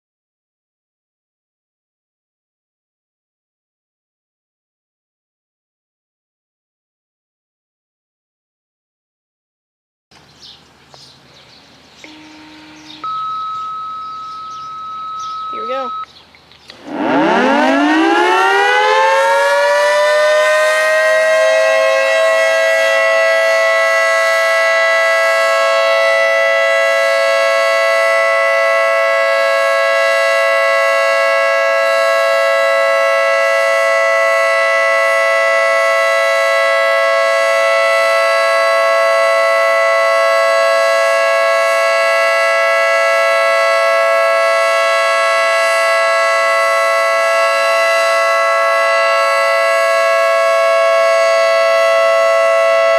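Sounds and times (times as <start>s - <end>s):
three-tone warning siren: 12.0s - 16.1s, 16.7s - 52.9s.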